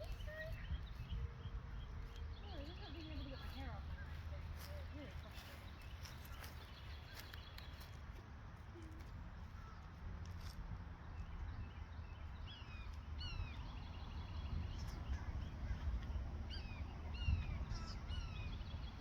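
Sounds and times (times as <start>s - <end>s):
eagle piping calls: 16.5s - 18.6s.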